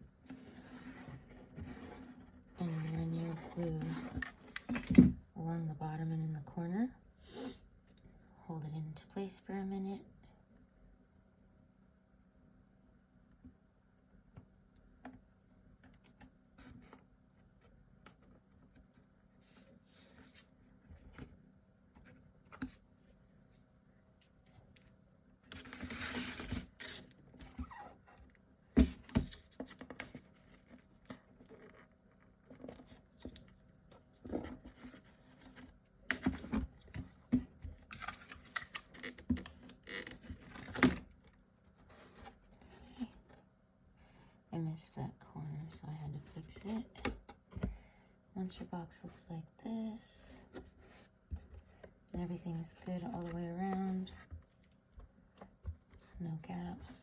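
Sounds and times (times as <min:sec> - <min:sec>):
faint room hum: 0:00.0 - 0:57.0
rustling and scraping of chipboard: 0:25.4 - 0:28.2, 0:28.8 - 0:41.1.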